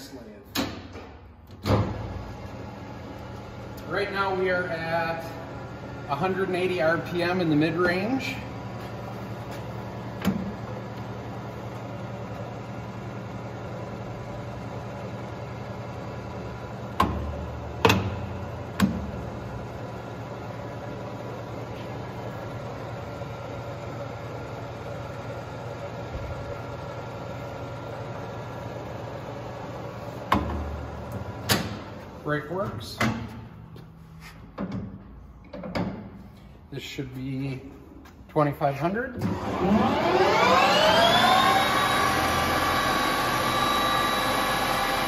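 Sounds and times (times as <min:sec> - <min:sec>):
metal lathe motor and gear hum: 0:39.2 - 0:45.0.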